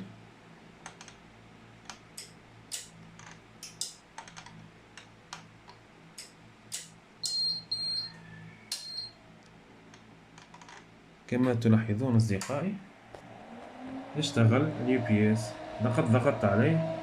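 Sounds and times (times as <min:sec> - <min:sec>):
low steady hum: 0:00.0 - 0:17.0
irregular clicks: 0:00.8 - 0:01.2, 0:01.8 - 0:07.4
high two-part buzzer beep: 0:07.2 - 0:08.1.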